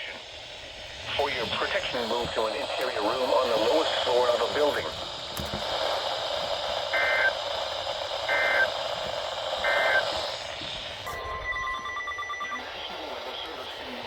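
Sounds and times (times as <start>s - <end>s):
steady hiss: 0.0s - 11.1s
warbling digital data bursts: 6.8s - 7.5s, 8.2s - 13.8s
steady electronic tone: 9.6s - 12.6s.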